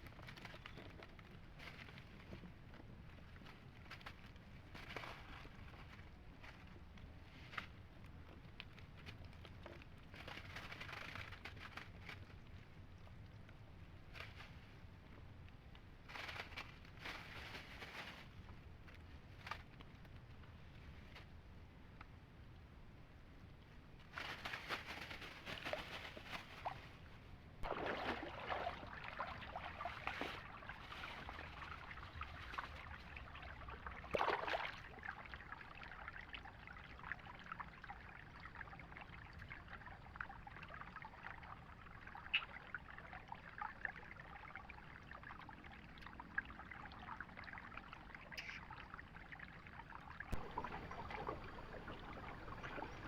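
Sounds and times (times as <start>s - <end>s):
water swishes: 24.1s - 53.0s
water trickling and splashing: 24.2s - 53.0s.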